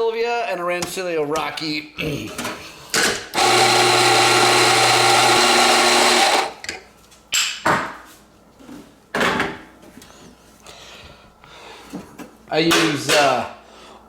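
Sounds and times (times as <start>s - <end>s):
coffee grinder motor humming: 3.4s - 6.6s.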